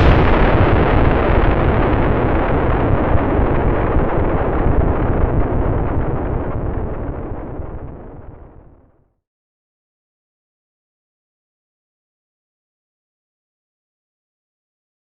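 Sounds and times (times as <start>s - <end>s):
deep explosion rumble: 0.0s - 9.0s.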